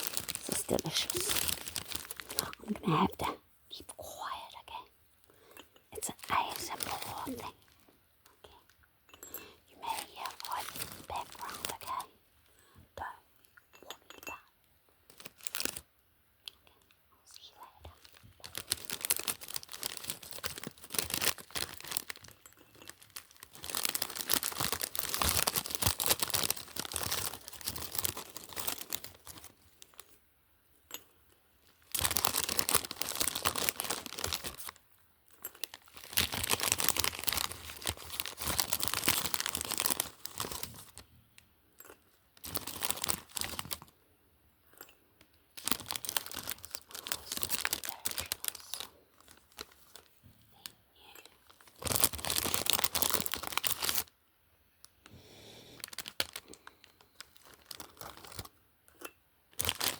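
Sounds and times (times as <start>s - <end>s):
packaging crinkling and tearing: 0.0s - 3.2s, 6.0s - 7.8s, 9.8s - 12.0s, 15.1s - 15.8s, 17.6s - 30.1s, 31.7s - 34.8s, 35.4s - 41.0s, 42.4s - 43.9s, 45.5s - 50.2s, 51.4s - 54.1s, 55.0s - 58.6s, 59.5s - 59.9s.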